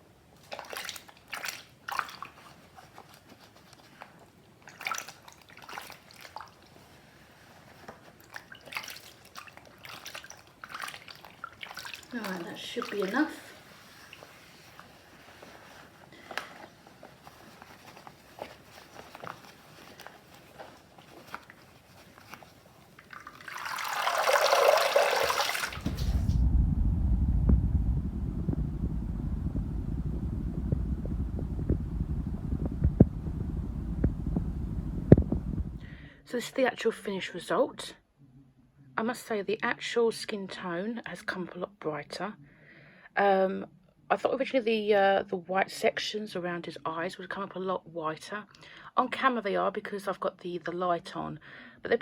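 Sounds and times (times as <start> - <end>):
wet fabric squelching: 0.4 - 26.5
water splashing and dripping: 0.5 - 2.6, 4.6 - 6.8, 8.2 - 14.8, 22.9 - 27.6
rush of running water: 23.0 - 27.3
steady low rumble: 25.8 - 36.1.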